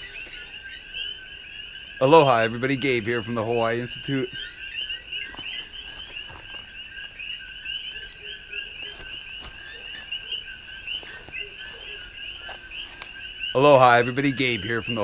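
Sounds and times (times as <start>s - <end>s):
frogs chirping: 0.0s - 15.0s.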